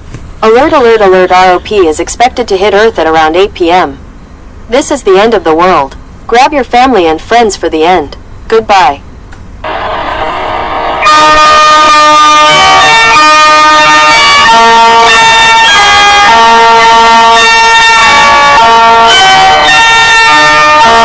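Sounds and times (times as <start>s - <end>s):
emergency alert siren tones: 9.6s - 21.0s.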